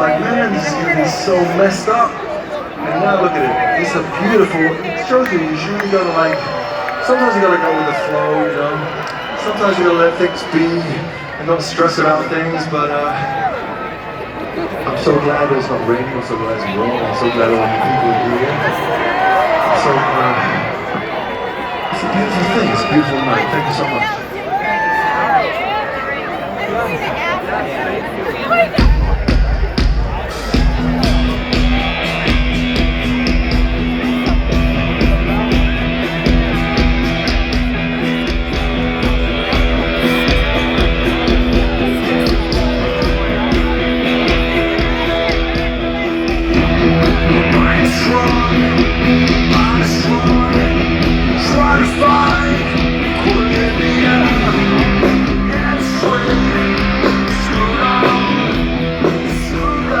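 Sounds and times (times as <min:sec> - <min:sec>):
live rock band: 0:28.5 - 1:00.0.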